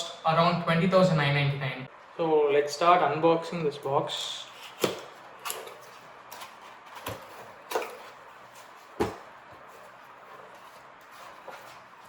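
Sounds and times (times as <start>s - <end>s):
cardboard rustling: 5.6s - 12.0s.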